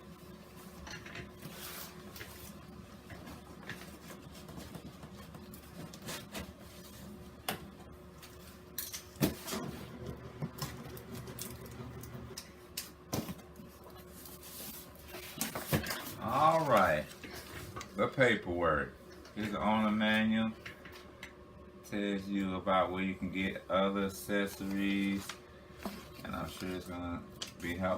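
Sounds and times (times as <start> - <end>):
faint steady hum: 0.0 - 27.9
cardboard packaging rustling: 13.2 - 17.8.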